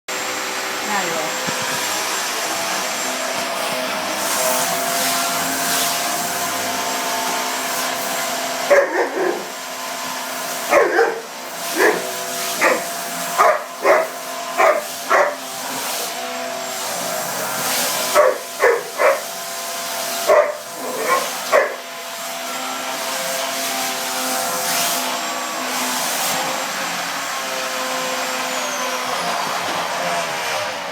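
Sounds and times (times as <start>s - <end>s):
vacuum cleaner running: 0.1s - 30.9s
dog barking: 8.7s - 9.5s, 10.6s - 15.5s, 18.1s - 19.3s, 20.2s - 21.8s.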